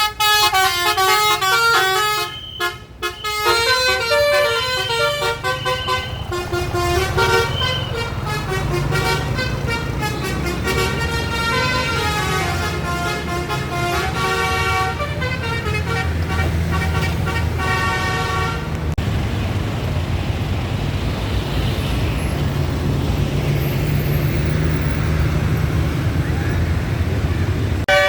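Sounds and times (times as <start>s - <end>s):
bus horn playing a melody: 0.0s - 18.8s
bus engine humming: 0.0s - 28.0s
road traffic noise: 0.0s - 28.0s.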